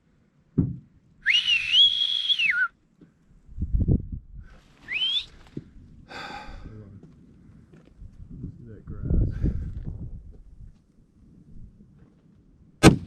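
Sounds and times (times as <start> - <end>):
person whistling loudly: 1.2 - 2.7, 4.8 - 5.4.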